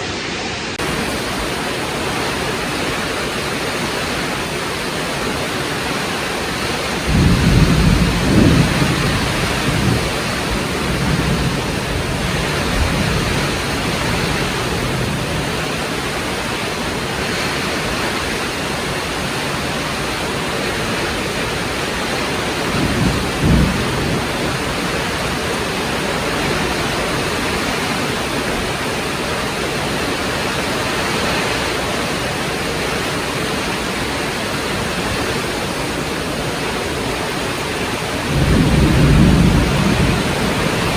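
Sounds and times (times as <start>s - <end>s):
heavy rain: 0.0s - 40.9s
thunder rumbling: 6.3s - 18.9s, 20.8s - 29.9s, 38.0s - 40.9s.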